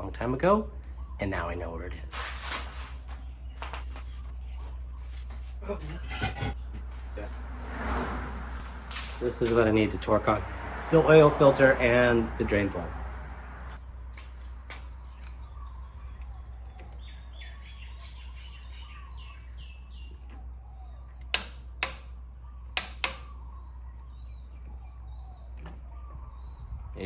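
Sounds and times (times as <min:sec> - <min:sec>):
birds chirping faintly: 0:00.0 - 0:07.8, 0:11.3 - 0:27.0.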